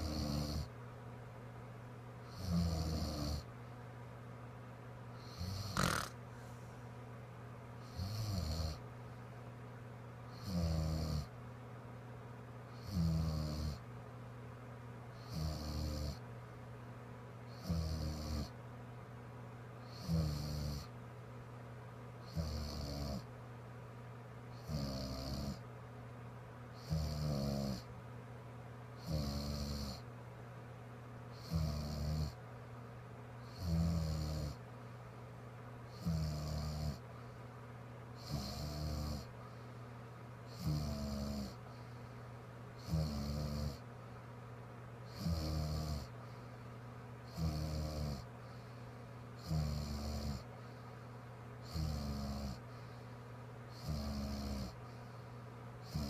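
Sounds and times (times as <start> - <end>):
woman snoring: 0.0 - 0.7, 2.3 - 3.5, 5.2 - 6.2, 7.9 - 8.8, 10.4 - 11.3, 12.8 - 13.8, 15.2 - 16.2, 17.5 - 18.5, 19.9 - 20.9, 22.3 - 23.2, 26.8 - 27.8, 29.0 - 30.0, 31.4 - 32.4, 33.5 - 34.6, 36.0 - 37.0, 38.2 - 39.3, 40.5 - 41.6, 42.8 - 43.8, 45.1 - 46.1, 47.3 - 48.3, 49.4 - 50.5, 51.7 - 52.6, 53.7 - 54.8
constant low hum: 0.0 - 56.0.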